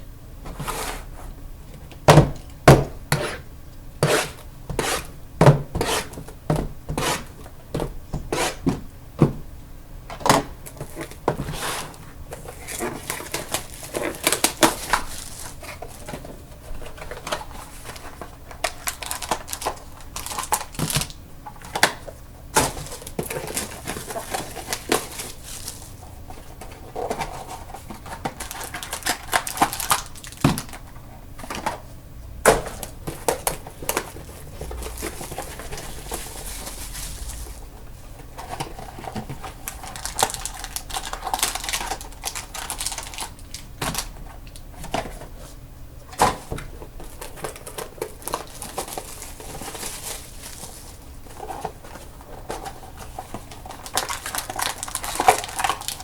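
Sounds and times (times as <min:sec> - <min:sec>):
plastic wrap crinkling and tearing: 0:12.4 - 0:16.1, 0:16.8 - 0:21.8, 0:22.6 - 0:26.0, 0:26.7 - 0:30.8, 0:32.7 - 0:44.6, 0:47.0 - 0:56.0
card boxes knocking and clacking: 0:32.4 - 0:36.4.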